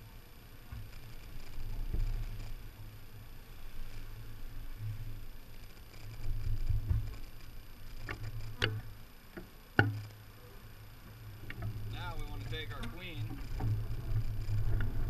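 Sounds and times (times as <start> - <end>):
bees humming: 7.4 - 14.7.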